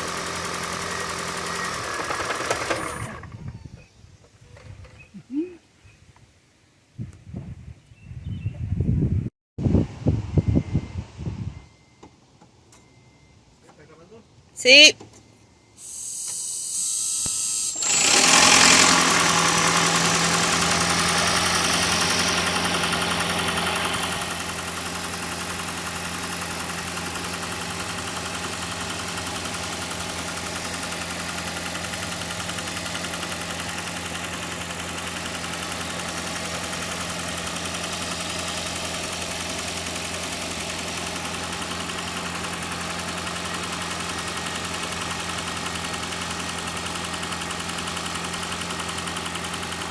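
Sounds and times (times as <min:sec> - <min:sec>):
car engine starting and idling: 0:00.0 - 0:03.7, 0:17.1 - 0:49.9.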